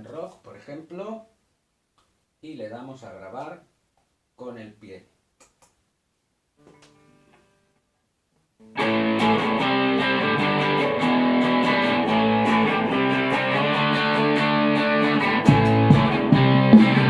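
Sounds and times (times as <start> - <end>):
electric guitar chords: 8.6 - 17.0.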